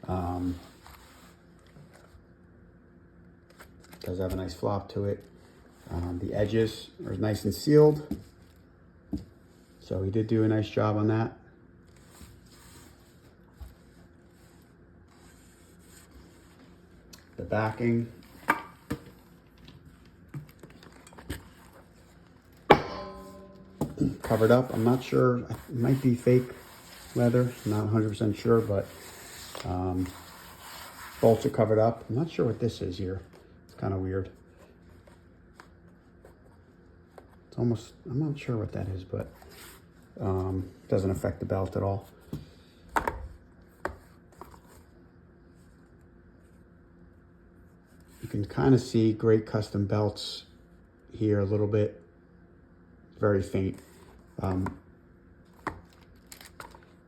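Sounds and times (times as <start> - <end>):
sharp ringing metal knock: 22.7 - 24.0.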